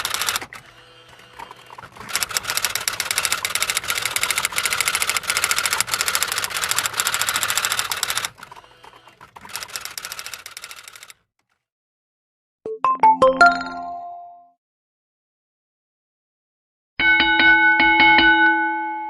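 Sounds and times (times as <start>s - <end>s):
rapid mechanical clicking clatter: 0.0s - 11.6s.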